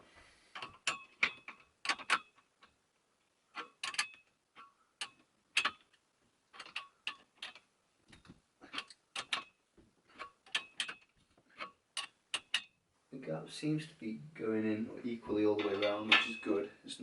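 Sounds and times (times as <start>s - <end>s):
spanners clicking on metal: 3.5s - 7.6s, 8.6s - 12.7s.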